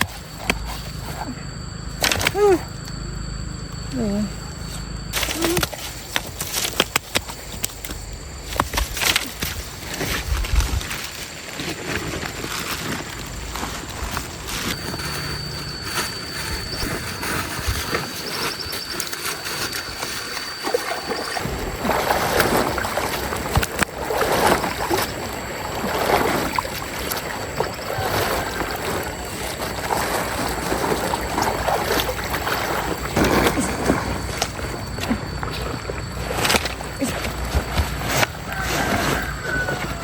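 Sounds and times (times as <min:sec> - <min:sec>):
water sloshing and splashing: 0:18.0 - 0:40.0
stream water rushing: 0:20.5 - 0:39.9.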